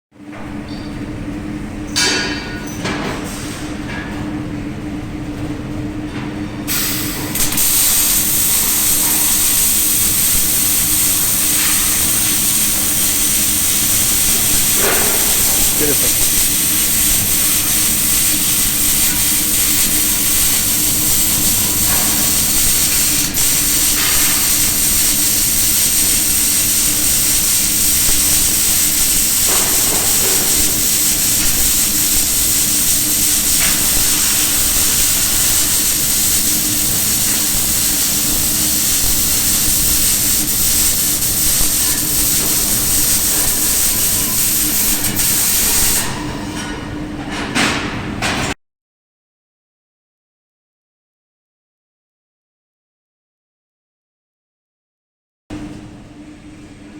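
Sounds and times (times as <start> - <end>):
steady hum: 4.5 - 46.3
welding arc crackling and hissing: 6.7 - 46.2.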